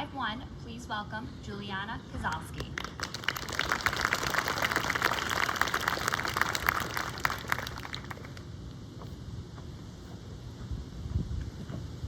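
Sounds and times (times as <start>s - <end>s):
audience clapping: 2.6s - 8.5s.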